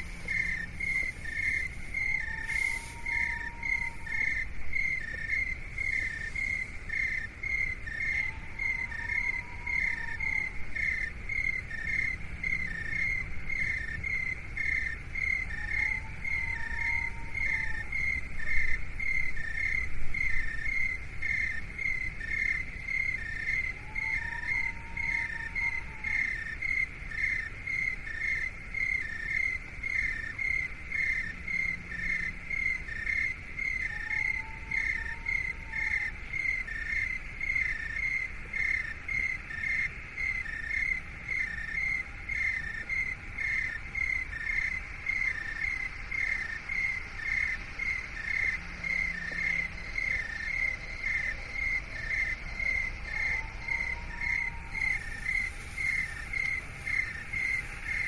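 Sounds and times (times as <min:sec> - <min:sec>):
cricket chirping: 0:00.0 - 0:58.0
faint background hiss: 0:00.0 - 0:58.0.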